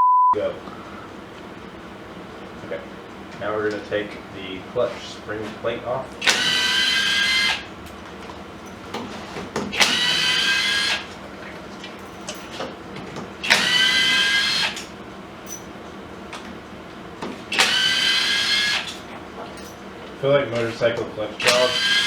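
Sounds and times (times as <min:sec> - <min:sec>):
power drill whining: 0:06.2 - 0:07.7, 0:09.7 - 0:11.1, 0:13.4 - 0:15.0, 0:17.5 - 0:19.0, 0:21.4 - 0:22.0.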